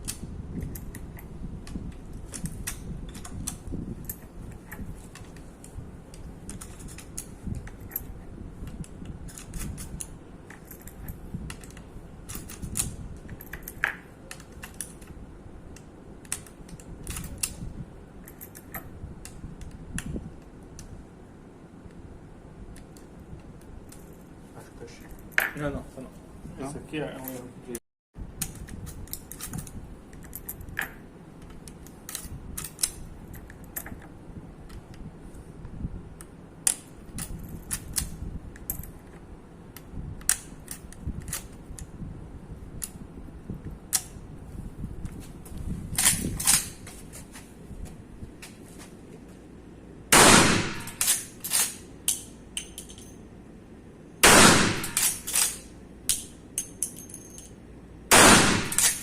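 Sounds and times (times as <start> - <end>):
gun handling clicks: 8.6 - 17.6, 50.2 - 53.2, 54.2 - 59.0
loud gunshots: 50.1 - 51.0, 54.2 - 55.0, 58.1 - 59.0
softer gunshot report: 50.2 - 50.9.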